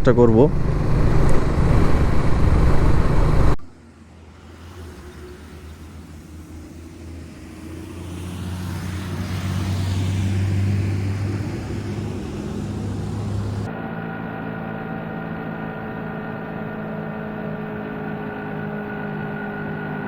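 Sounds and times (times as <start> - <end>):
wind rush: 0.0 - 13.7
road vehicle passing: 0.0 - 13.8
road noise: 0.0 - 20.0.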